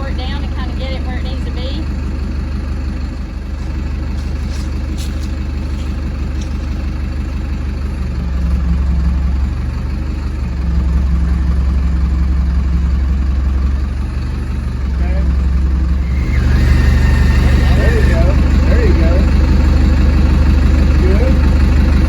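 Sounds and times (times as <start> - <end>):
heavy machine engine revving: 0.0 - 22.0.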